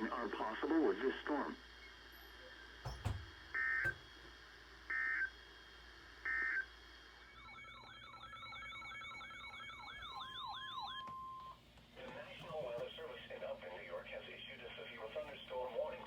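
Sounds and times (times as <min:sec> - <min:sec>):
siren-like wailing tone: 0:07.3 - 0:11.4.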